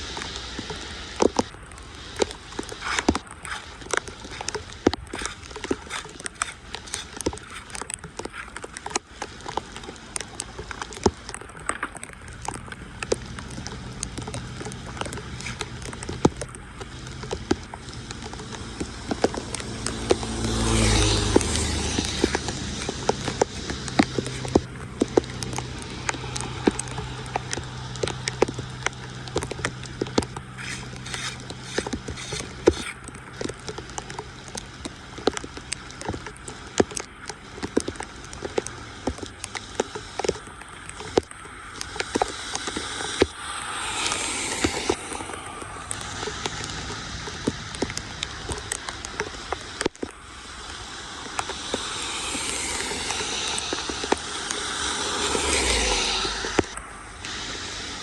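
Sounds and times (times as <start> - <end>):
low engine hum: 0.0 - 58.0
motor vehicle passing: 12.3 - 58.0.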